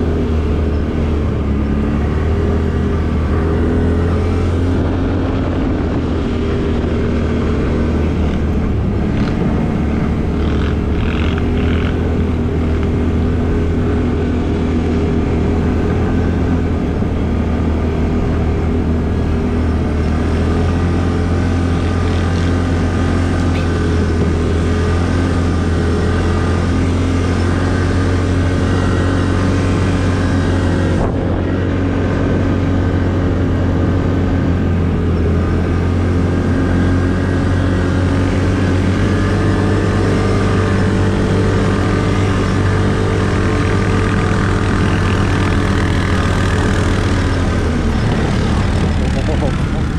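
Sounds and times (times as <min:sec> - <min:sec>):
atv engine running: 0:00.0 - 0:49.9.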